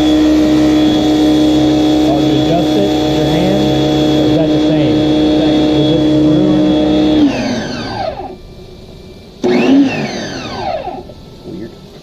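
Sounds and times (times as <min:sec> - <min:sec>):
pressure washer motor and pump: 0:00.0 - 0:12.0.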